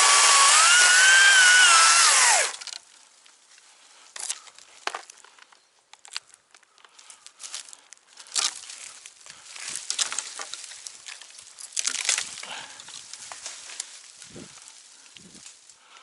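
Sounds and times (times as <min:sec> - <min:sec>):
twigs and foliage rustling: 0:02.0 - 0:16.0
twigs snapping: 0:02.2 - 0:03.4, 0:04.2 - 0:15.8.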